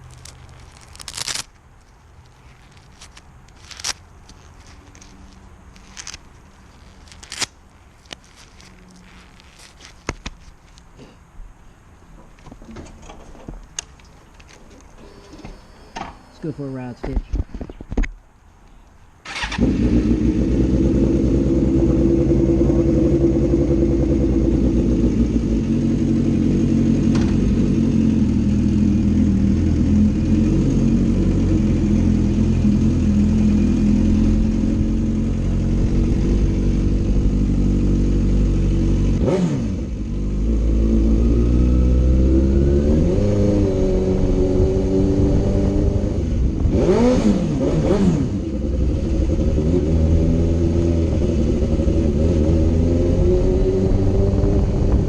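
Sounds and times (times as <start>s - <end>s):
motorcycle engine running: 19.4s - 55.0s.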